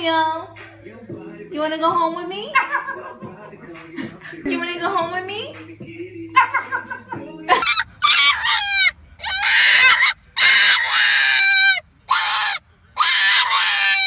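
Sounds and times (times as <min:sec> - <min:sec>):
dog whining howls: 0:06.4 - 0:14.0.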